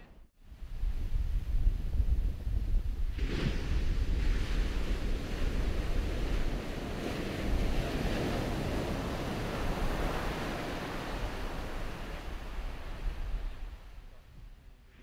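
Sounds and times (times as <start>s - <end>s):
wind buffeting microphone: 0.4s - 15.0s
ocean surf breaking: 3.2s - 13.9s.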